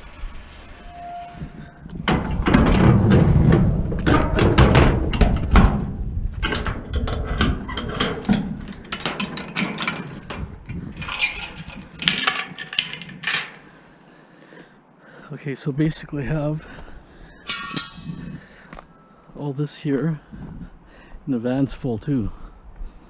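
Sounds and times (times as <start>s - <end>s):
low rumbling handling noise: 0.0s - 13.7s
scrap metal clanking: 0.0s - 13.7s, 17.4s - 18.4s.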